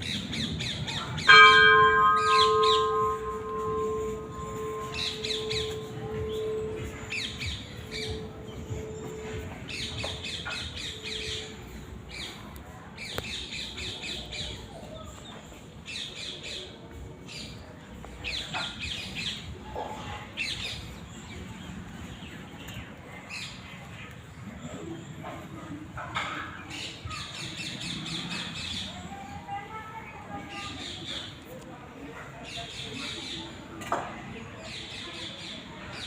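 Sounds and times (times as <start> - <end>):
bell ringing: 1.3 - 8.8.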